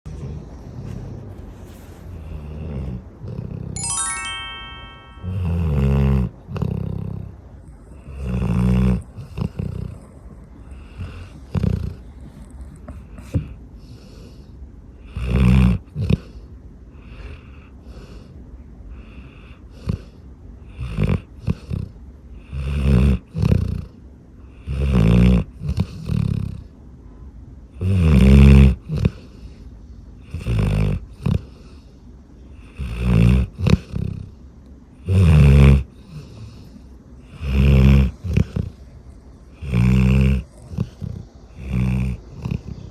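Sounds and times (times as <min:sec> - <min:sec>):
dog snoring loudly: 0:07.9 - 0:14.4, 0:15.0 - 0:16.4, 0:19.0 - 0:26.7, 0:27.8 - 0:29.4, 0:30.2 - 0:31.7, 0:32.6 - 0:34.3, 0:35.0 - 0:38.9, 0:39.5 - 0:42.9.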